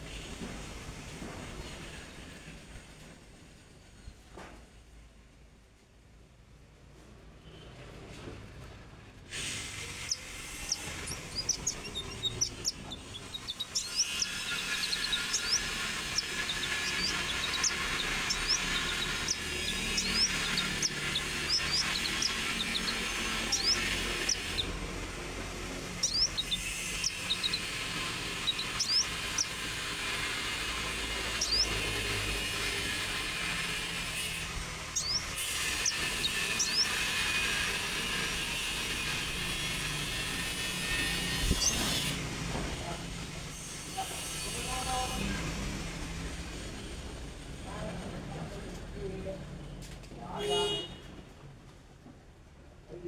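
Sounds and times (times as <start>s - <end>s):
songbird chirping: 9.8s - 33.8s, 34.5s - 39.4s, 40.9s - 42.0s.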